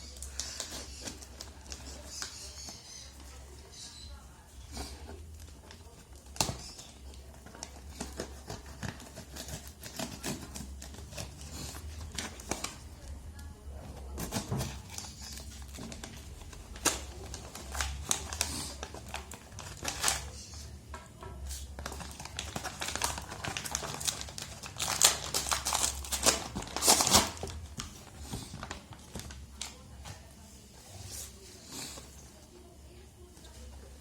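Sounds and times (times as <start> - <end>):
packaging crinkling and rustling: 14.1 - 20.7, 21.5 - 31.4.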